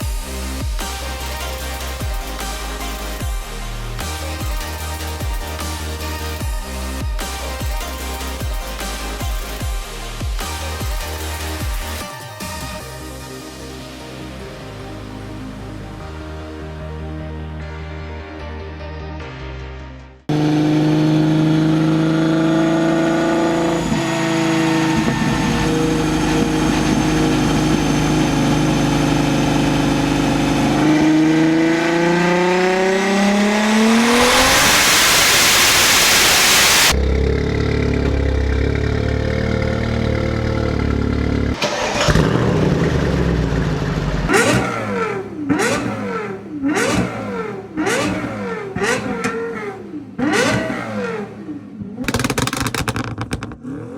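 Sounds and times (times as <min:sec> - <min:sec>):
sports car engine revving: 0:20.3 - 0:53.9.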